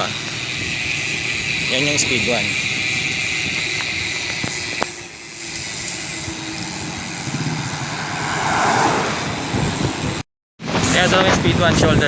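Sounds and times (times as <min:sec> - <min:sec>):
street traffic noise: 0:00.0 - 0:11.7
motor vehicle passing: 0:05.6 - 0:10.2.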